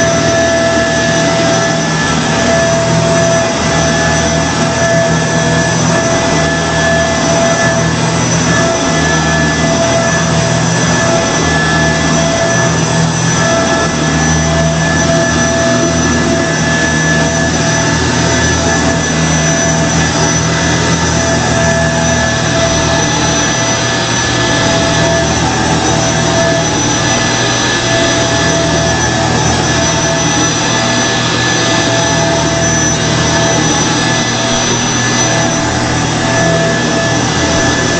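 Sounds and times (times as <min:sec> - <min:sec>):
vacuum cleaner running: 0:00.0 - 0:37.9.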